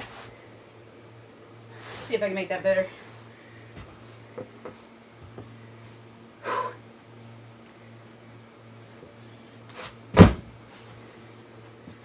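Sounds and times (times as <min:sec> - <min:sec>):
low steady hum: 0:00.0 - 0:12.0
board swishing on carpet: 0:09.7 - 0:10.0
board thump on carpet: 0:10.1 - 0:10.5.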